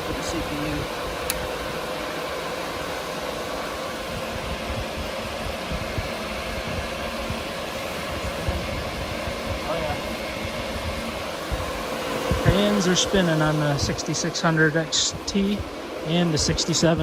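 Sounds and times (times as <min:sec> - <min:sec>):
cooling fans whirring: 0:00.0 - 0:17.0
sharp click: 0:01.2 - 0:01.5.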